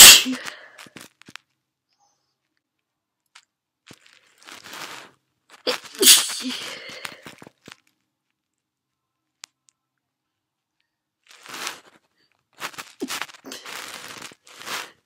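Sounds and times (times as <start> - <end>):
person sneezing: 0.0 - 0.9, 5.7 - 7.3, 13.0 - 13.9
breathy in-breath: 6.4 - 7.4.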